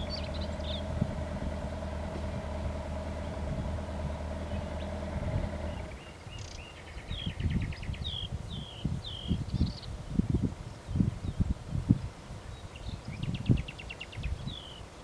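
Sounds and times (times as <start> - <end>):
engine humming: 0.0 - 6.6
birds chirping: 0.0 - 9.9.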